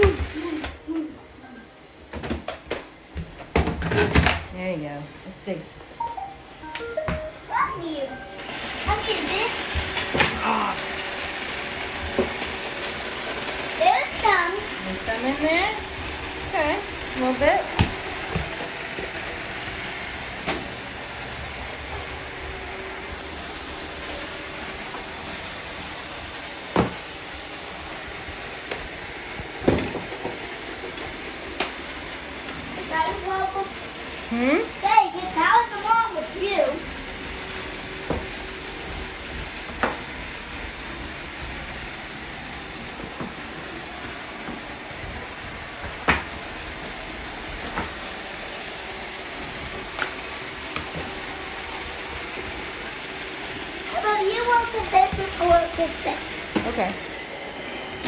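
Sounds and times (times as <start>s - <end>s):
robot vacuums whirring: 0.0s - 1.6s, 7.6s - 58.0s.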